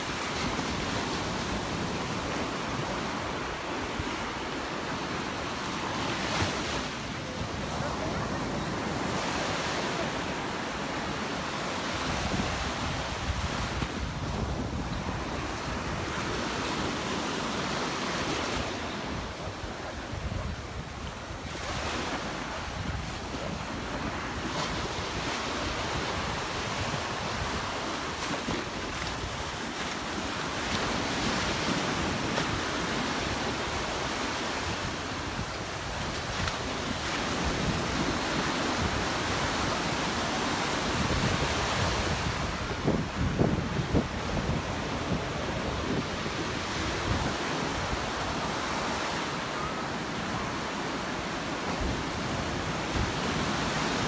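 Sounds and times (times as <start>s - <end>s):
surf breaking on beach: 0.0s - 54.0s
wind buffeting microphone: 11.9s - 17.1s, 18.0s - 49.0s.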